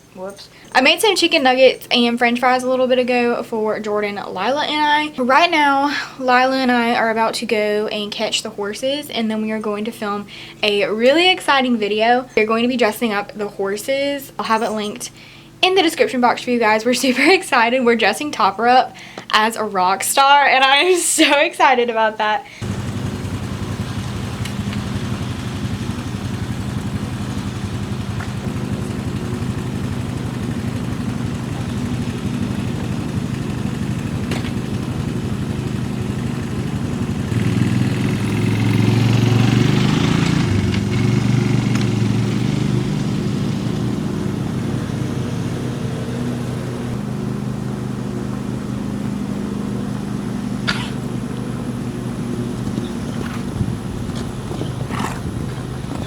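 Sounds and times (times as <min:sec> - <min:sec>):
vehicle engine running: 0:22.6 - 0:56.0.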